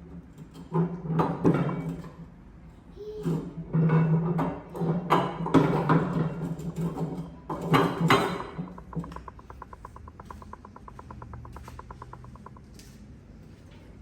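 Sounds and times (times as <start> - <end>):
hand tools knocking on metal: 7.0 - 12.7
rapid even clicking: 8.0 - 12.8.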